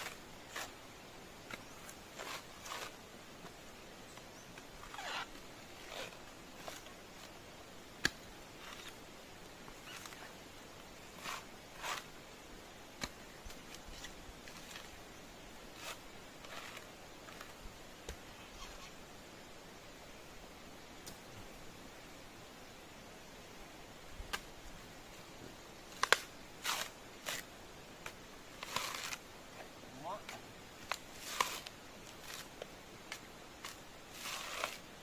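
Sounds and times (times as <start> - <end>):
coconut husk tearing and scraping: 0.0 - 0.8, 1.5 - 3.0, 4.8 - 7.4, 8.0 - 9.0, 9.8 - 10.3, 11.0 - 12.1, 13.0 - 14.9, 15.7 - 17.6, 25.9 - 34.9.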